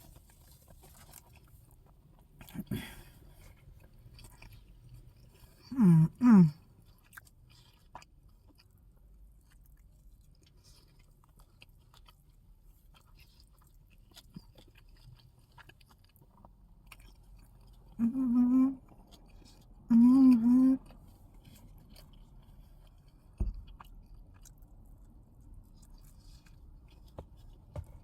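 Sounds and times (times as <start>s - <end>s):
person humming briefly: 5.7s - 6.5s, 18.0s - 18.8s.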